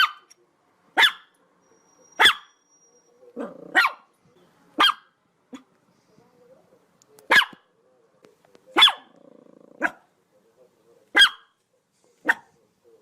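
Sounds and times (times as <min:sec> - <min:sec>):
dog barking: 0:00.0 - 0:00.3, 0:01.0 - 0:01.3, 0:02.2 - 0:02.6, 0:03.4 - 0:04.1, 0:04.8 - 0:05.7, 0:07.3 - 0:07.7, 0:08.7 - 0:09.2, 0:09.8 - 0:10.1, 0:11.1 - 0:11.6, 0:12.2 - 0:12.6
dog growling low: 0:03.3 - 0:03.8, 0:09.0 - 0:10.0.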